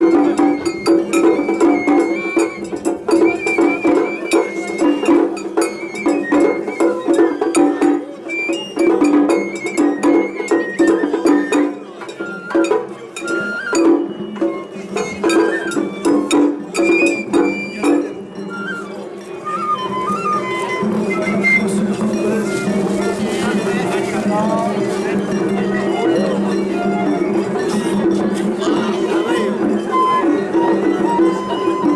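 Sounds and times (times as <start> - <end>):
rapid drum strikes: 0.0 - 18.1
bamboo flute melody: 0.0 - 31.9.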